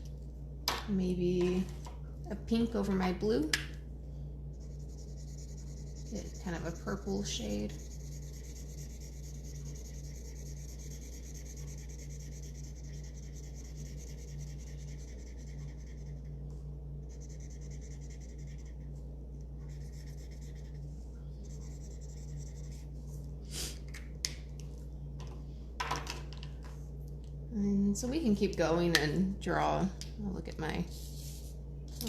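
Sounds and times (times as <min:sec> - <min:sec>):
marker rubbing on paper: 0:04.6 - 0:16.2, 0:17.1 - 0:18.8, 0:19.7 - 0:20.8.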